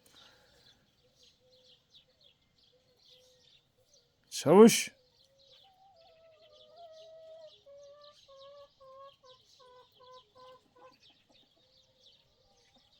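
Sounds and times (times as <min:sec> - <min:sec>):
chicken clucking: 0:07.2 - 0:11.5.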